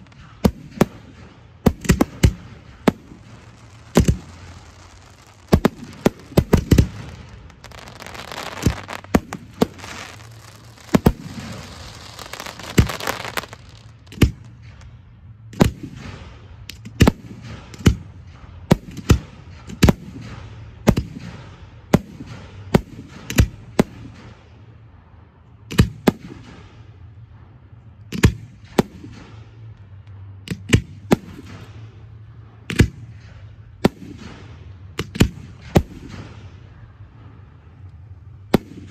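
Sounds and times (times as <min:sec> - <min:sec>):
firework shells bursting: 0:01.8 - 0:14.6
fireworks crackling hiss: 0:01.8 - 0:14.9.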